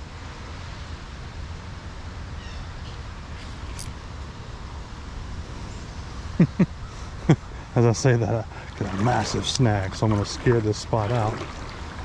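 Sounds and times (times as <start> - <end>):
faint bird chirps: 2.4 - 3.8
creek water rushing: 7.1 - 12.0.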